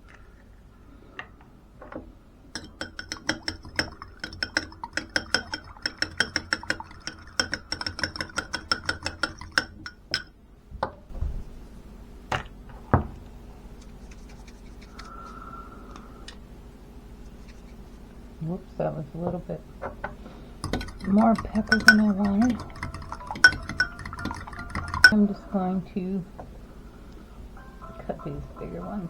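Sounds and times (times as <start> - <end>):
fork beating egg in bowl: 2.5 - 10.3, 13.7 - 16.0, 17.2 - 18.1, 20.3 - 25.2.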